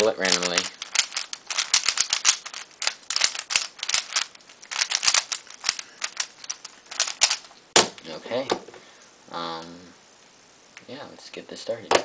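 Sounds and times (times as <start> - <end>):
speed cube layers clacking: 0.0 - 7.5.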